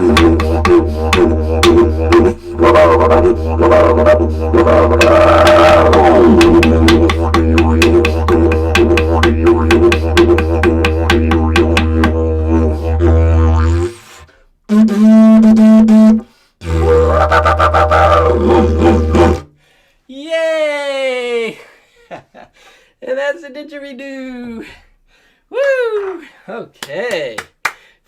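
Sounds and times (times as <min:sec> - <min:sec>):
didgeridoo drone: 0:00.0 - 0:13.9, 0:14.8 - 0:19.4.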